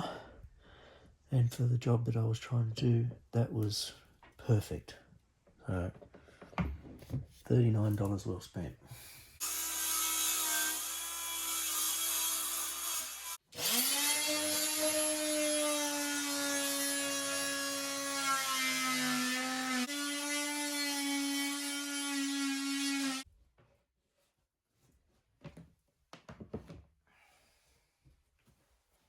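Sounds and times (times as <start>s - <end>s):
multi-tool cutting wood: 9.4s - 23.3s.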